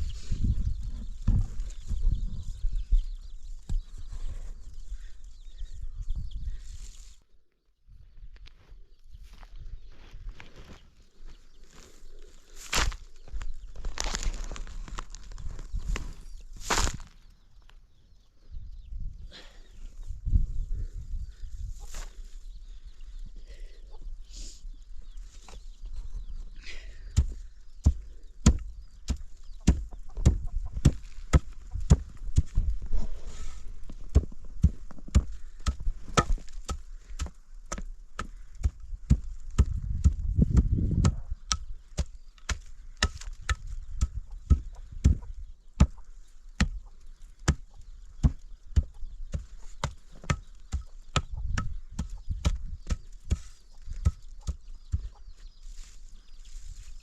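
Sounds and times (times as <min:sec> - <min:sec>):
hand tool striking hard material: 0:34.1 - 0:45.2, 0:47.4 - 0:55.1.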